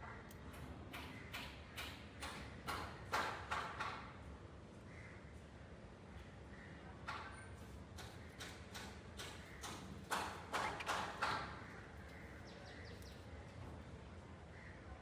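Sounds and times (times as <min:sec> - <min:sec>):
budgies chirping harshly: 0:10.1 - 0:13.2.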